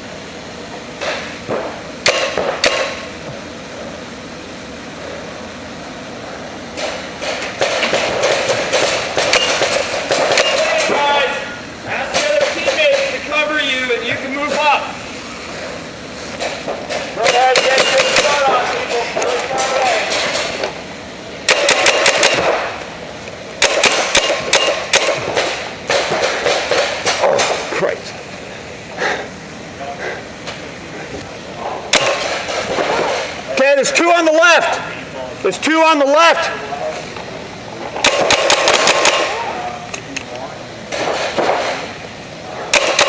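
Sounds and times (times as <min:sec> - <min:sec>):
paintball markers firing: 0:17.2 - 0:18.6, 0:21.5 - 0:22.7, 0:23.6 - 0:27.6, 0:38.0 - 0:39.3, 0:42.7 - 0:43.0.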